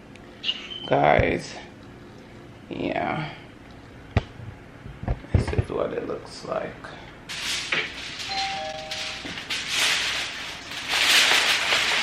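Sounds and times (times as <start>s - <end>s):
rustling handling noise: 7.3s - 12.0s.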